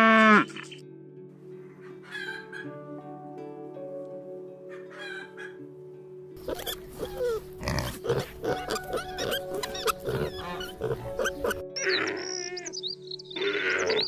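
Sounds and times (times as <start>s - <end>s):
pigs grunting and squealing: 0.0s - 0.7s, 6.4s - 12.7s, 13.4s - 14.0s
background music: 0.0s - 14.0s.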